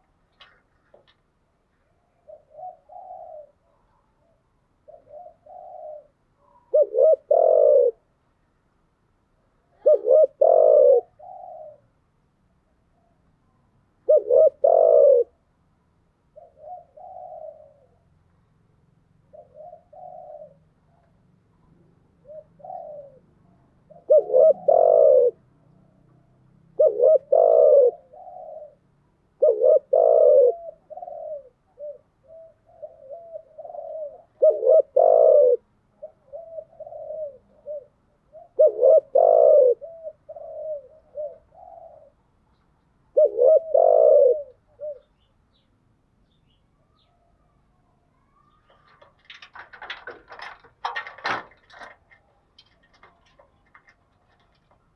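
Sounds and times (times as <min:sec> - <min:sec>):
dove cooing: 0:01.9 - 0:08.1, 0:09.6 - 0:12.0, 0:14.0 - 0:15.4, 0:16.3 - 0:18.2, 0:19.2 - 0:21.2, 0:22.0 - 0:25.5, 0:26.6 - 0:42.4, 0:43.0 - 0:45.3, 0:47.0 - 0:54.9.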